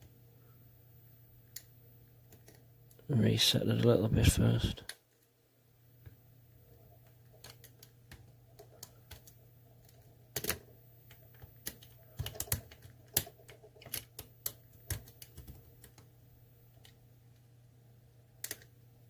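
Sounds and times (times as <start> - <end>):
faint low hum: 0.0 - 19.0.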